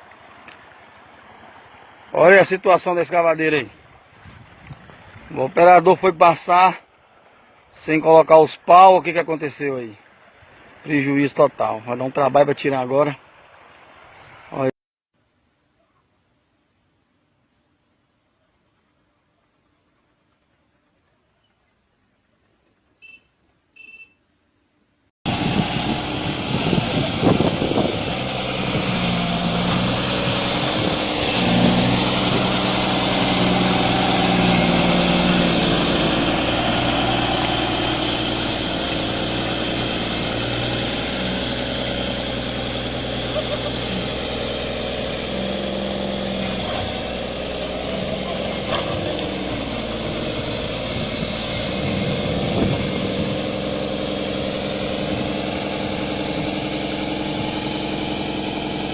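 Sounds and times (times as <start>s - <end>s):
diesel engine running: 25.3s - 58.9s.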